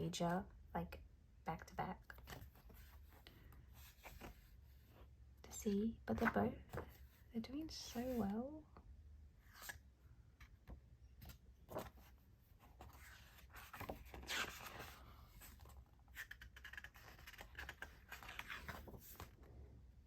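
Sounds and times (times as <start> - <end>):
paper pages rustling: 11.2 - 19.5.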